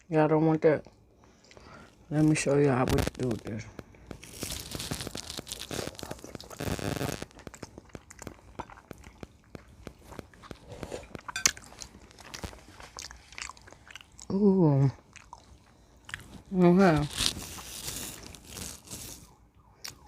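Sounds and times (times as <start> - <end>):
crunching bite into meat: 4.1 - 14.2
chewing clicks: 6.0 - 14.3.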